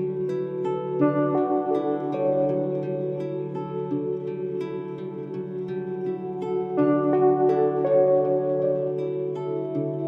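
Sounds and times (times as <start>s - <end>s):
plucked notes over low tones: 0.0s - 10.0s.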